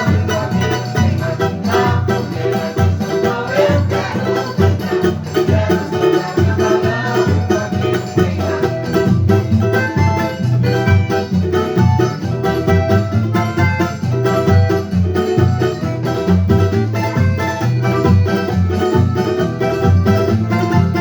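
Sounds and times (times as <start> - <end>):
banjo plucked melody: 0.0 - 21.0
low banjo bass notes: 0.0 - 21.0.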